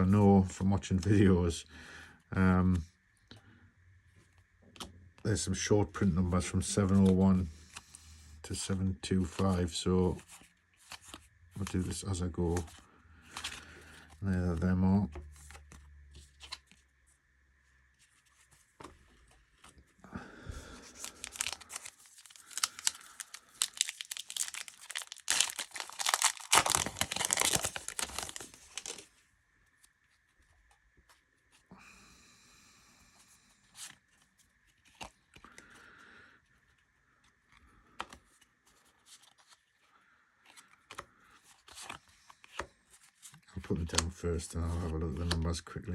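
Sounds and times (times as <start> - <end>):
cards rustling: 4.8 - 17.0, 18.0 - 29.2, 33.8 - 36.0, 36.7 - 45.7
wrapper torn and crinkled: 21.0 - 29.0.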